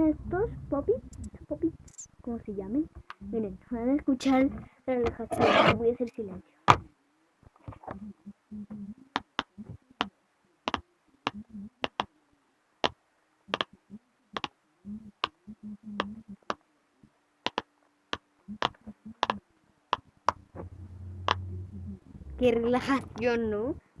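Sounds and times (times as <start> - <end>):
fingers rubbing silicone: 5.2 - 5.8, 18.5 - 19.4.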